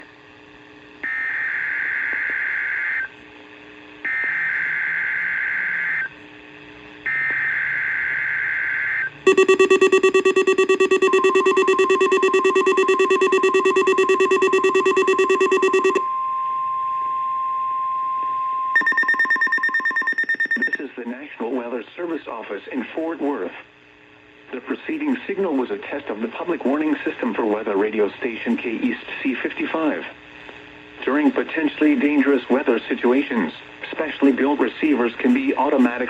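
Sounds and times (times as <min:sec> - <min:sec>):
digital data bursts: 0:09.3 - 0:16.0, 0:18.8 - 0:20.8
pulsing beeps: 0:09.3 - 0:16.0, 0:18.8 - 0:20.8
rapidly pulsing alarm tone: 0:09.3 - 0:16.0, 0:18.8 - 0:20.8
steady high tone: 0:09.3 - 0:16.2, 0:18.8 - 0:20.8.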